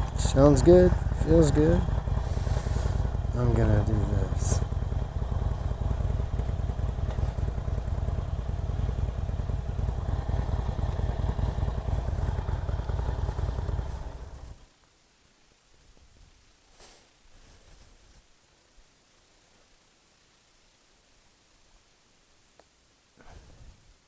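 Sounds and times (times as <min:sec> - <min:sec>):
motorcycle engine running: 0:00.0 - 0:14.7.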